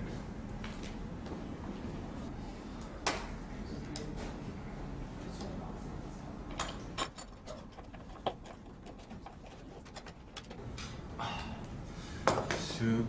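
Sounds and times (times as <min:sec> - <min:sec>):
shelf parts clicking and knocking: 0:06.5 - 0:10.6.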